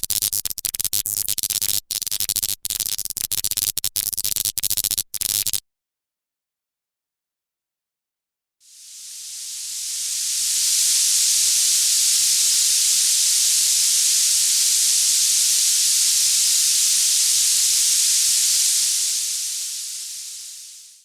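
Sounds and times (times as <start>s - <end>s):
steady high hiss: 8.7s - 21.0s.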